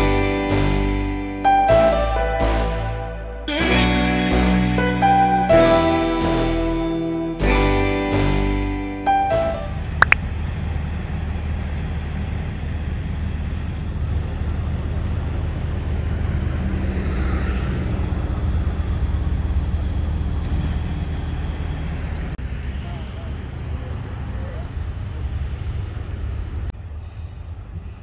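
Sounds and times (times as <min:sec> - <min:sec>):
road noise: 0:08.3 - 0:28.0
vehicle engine rumbling: 0:09.0 - 0:28.0.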